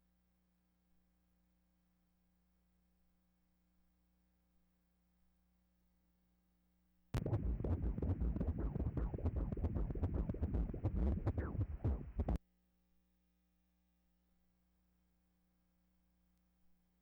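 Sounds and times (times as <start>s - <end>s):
fetal heartbeat doppler whooshing: 7.2s - 12.4s.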